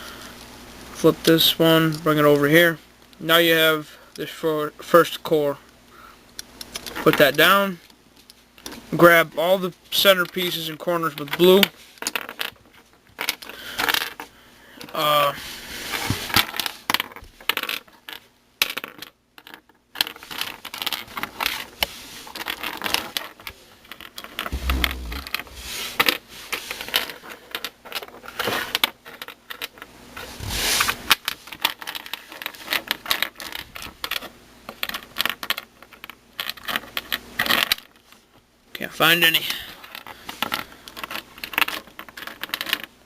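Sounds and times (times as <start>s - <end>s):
dull bumps: 24.5s - 25.8s.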